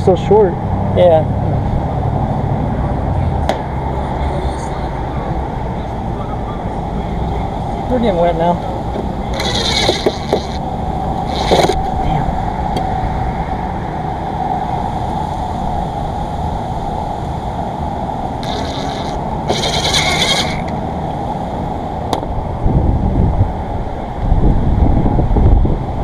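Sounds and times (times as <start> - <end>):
wind buffeting microphone: 8.6 - 26.0.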